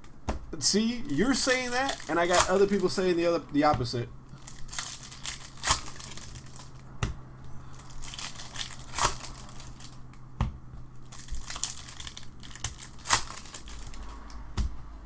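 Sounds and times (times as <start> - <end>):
foil wrapper crinkling and tearing: 1.1 - 3.1, 4.3 - 6.8, 7.6 - 10.0, 11.0 - 14.3.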